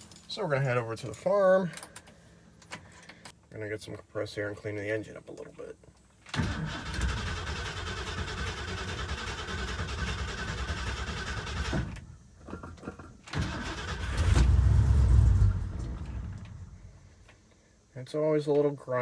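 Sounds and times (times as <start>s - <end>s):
engine starting and running: 6.3s - 17.1s.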